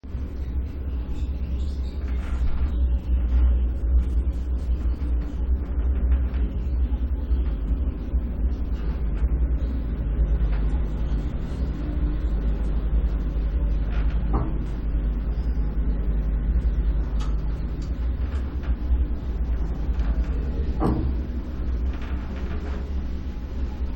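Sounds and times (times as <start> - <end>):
elevator low rumble: 0.0 - 23.9
faint hum: 0.0 - 23.9
light clicks and rattles: 16.6 - 23.9.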